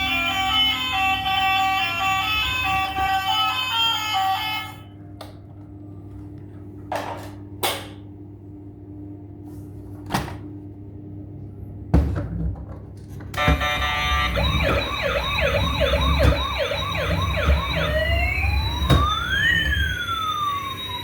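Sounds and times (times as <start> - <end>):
melody playing: 0.0 - 3.6, 13.4 - 21.0.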